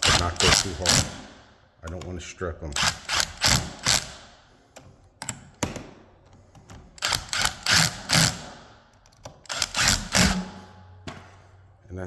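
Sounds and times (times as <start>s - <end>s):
drill driving screws: 0.0s - 1.3s, 2.8s - 4.2s, 7.0s - 8.6s, 9.4s - 10.6s.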